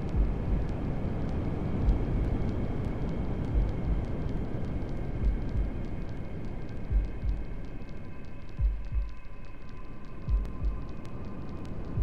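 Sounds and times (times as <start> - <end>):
faint whine: 0.0 - 12.0
heartbeat double thump: 3.5 - 4.0.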